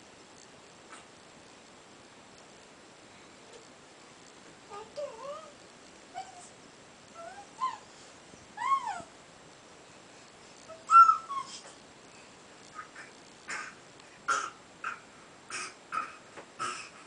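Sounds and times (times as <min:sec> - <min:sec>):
baby squealing: 0:08.6 - 0:09.1, 0:10.7 - 0:11.6.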